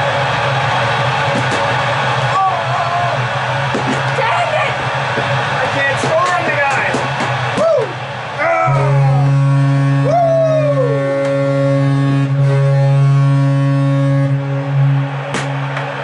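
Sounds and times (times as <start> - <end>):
hockey goal horn: 8.7 - 16.0
whooping cries: 10.0 - 11.1.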